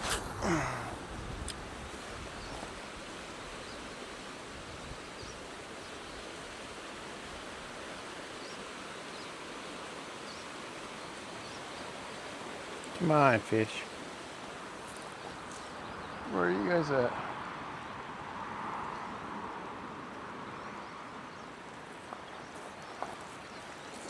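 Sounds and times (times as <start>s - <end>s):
even hiss: 0.0s - 3.9s.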